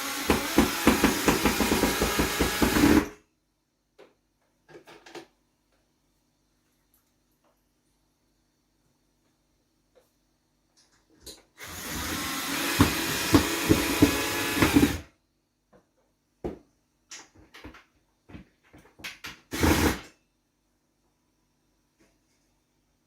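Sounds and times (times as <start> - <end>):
power drill driving screw: 0.0 - 3.2, 11.6 - 15.0, 19.5 - 20.1.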